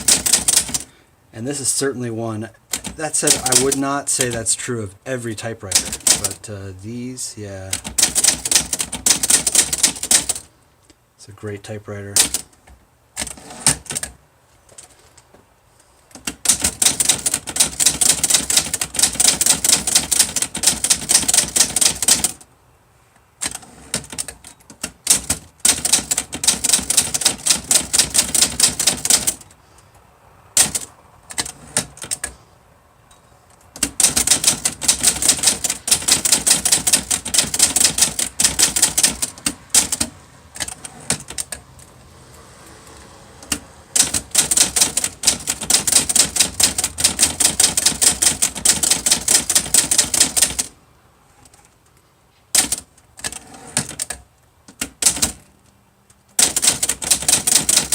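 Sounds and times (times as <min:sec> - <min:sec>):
manual typewriter typing: 0:00.0 - 0:00.9, 0:02.7 - 0:04.6, 0:05.6 - 0:06.4, 0:07.5 - 0:10.5, 0:12.1 - 0:14.2, 0:16.1 - 0:22.5, 0:23.4 - 0:29.6, 0:30.5 - 0:32.4, 0:33.7 - 0:41.9, 0:43.3 - 0:50.8, 0:52.5 - 0:55.6, 0:56.3 - 0:57.9.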